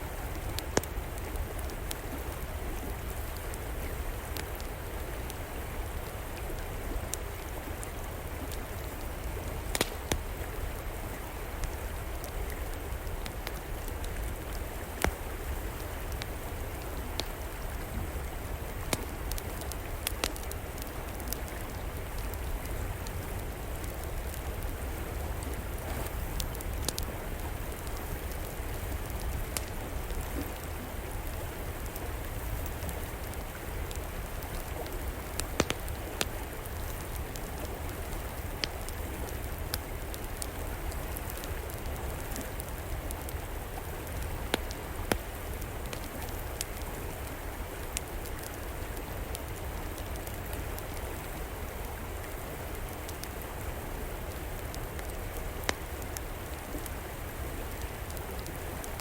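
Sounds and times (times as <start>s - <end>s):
wood fire crackling: 0.1s - 59.0s.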